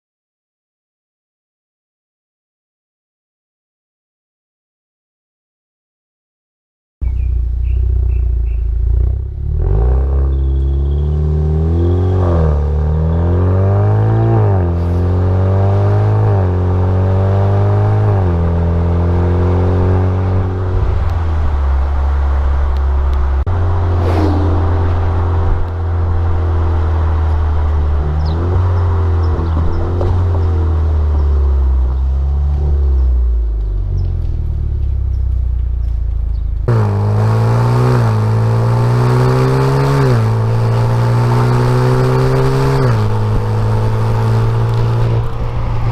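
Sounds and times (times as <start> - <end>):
car exhaust accelerating: 7.0 - 45.9
brief whoosh: 23.6 - 25.8.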